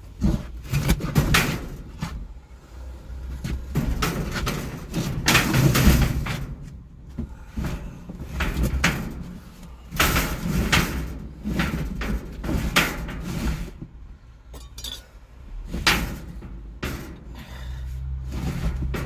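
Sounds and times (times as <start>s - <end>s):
irregular knocks and clatters: 3.2s - 17.4s, 18.0s - 19.0s.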